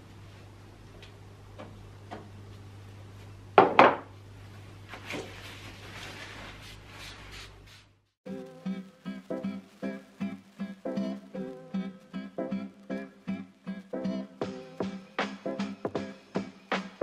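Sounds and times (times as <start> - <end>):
rubbing sound: 4.9 - 8.0.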